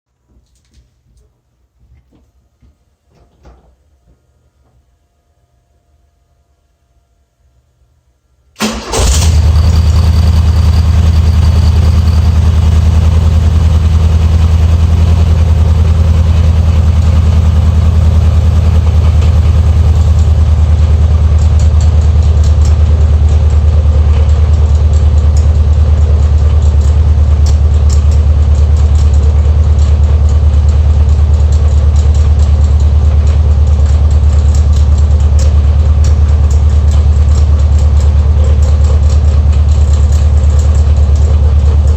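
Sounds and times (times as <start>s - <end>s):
car engine starting and idling: 8.6s - 41.9s.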